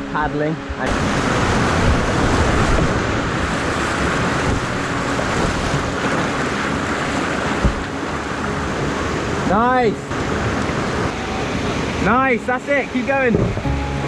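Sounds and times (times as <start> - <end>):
fast river rushing: 0.0 - 14.0
wind on microphone: 0.7 - 9.4.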